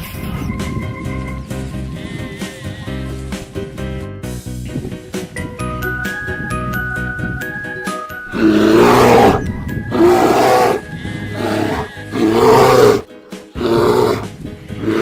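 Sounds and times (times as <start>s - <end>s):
cheerful children's music: 0.0s - 14.8s
animal roaring call: 8.3s - 15.0s.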